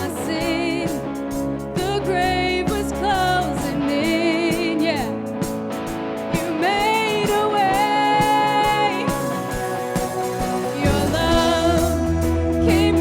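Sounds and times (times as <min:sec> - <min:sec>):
band playing sustained backing: 0:00.0 - 0:13.0
deep bass: 0:10.3 - 0:13.0
person singing long held notes: 0:10.6 - 0:13.0.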